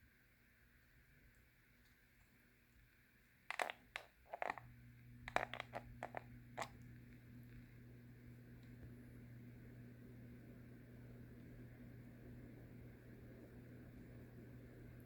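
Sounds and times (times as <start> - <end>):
ceiling fan motor humming: 4.3 - 15.0.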